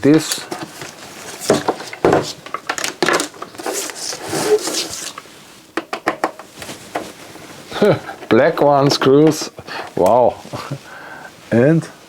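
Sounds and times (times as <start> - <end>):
scraping of casing parts: 0.1 - 7.5.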